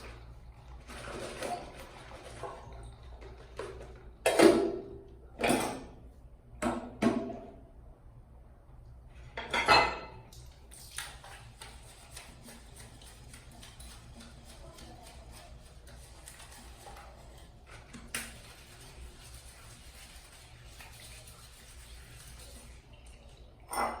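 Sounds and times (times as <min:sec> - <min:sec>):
dishes and utensils clattering: 0:00.9 - 0:07.5, 0:09.4 - 0:10.3, 0:22.0 - 0:24.0.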